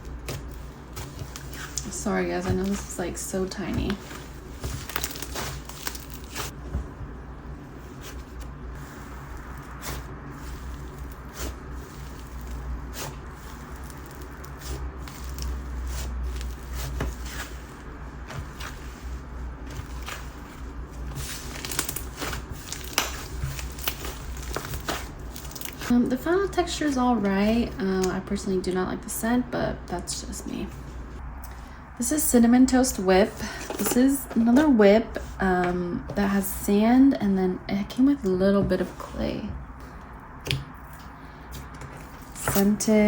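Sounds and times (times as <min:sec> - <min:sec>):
low steady hum: 0:00.0 - 0:43.0
slime squishing and popping: 0:04.0 - 0:06.5, 0:21.2 - 0:25.9.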